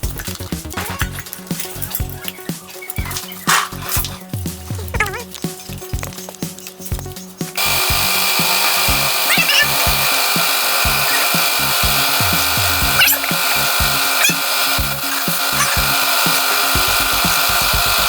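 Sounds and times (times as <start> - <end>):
background music with beat: 0.0 - 18.0
power tool running at high speed: 7.6 - 18.0
squeaks from tool on part: 9.2 - 9.9, 12.8 - 13.4, 14.1 - 14.6.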